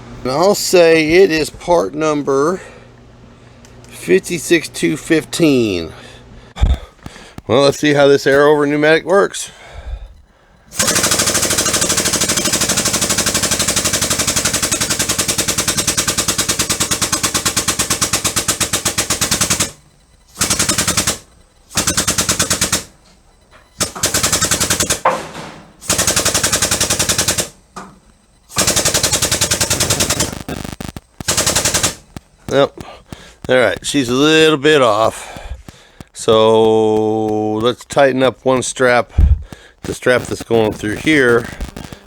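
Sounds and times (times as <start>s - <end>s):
air-driven pump chattering: 6.4s - 8.5s, 9.4s - 42.0s.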